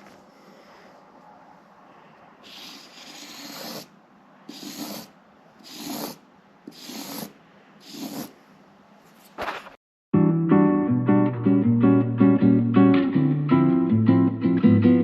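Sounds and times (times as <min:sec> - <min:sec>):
person breathing hard: 0:00.1 - 0:01.1.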